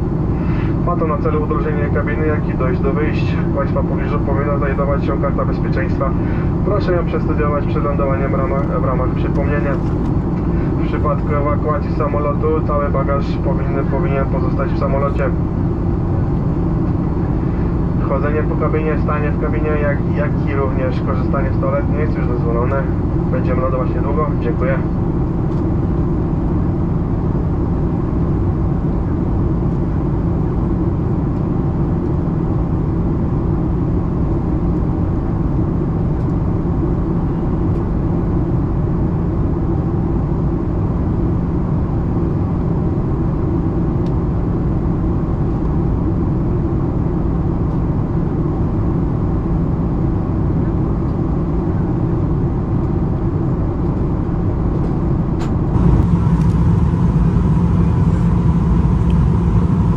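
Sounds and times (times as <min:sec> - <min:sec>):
aircraft engines droning: 0:00.0 - 0:59.9
low hum: 0:00.0 - 0:59.9
air rushing over fuselage: 0:54.6 - 0:59.9.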